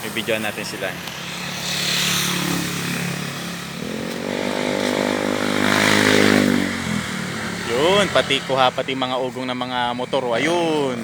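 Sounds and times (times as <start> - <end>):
motorcycle passing: 0.0 - 11.0.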